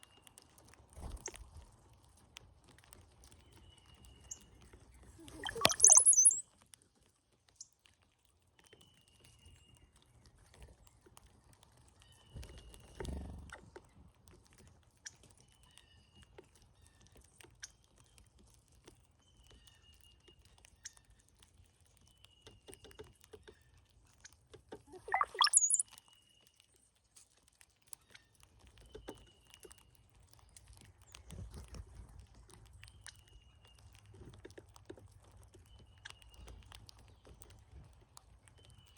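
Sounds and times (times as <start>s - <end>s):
bird gurgling song with high squeal: 5.2s - 6.4s, 24.9s - 25.8s
faint short bird chirps: 5.3s - 6.4s, 25.0s - 26.3s.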